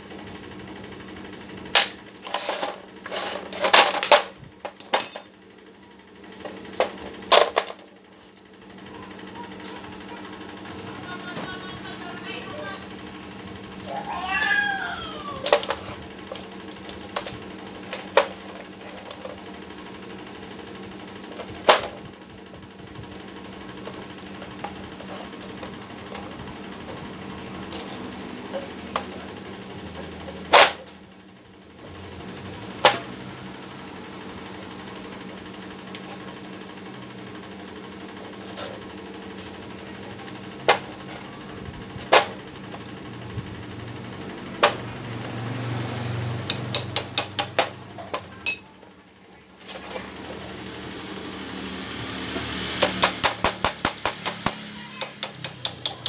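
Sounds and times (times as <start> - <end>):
cat meowing: 13.9 - 15.4.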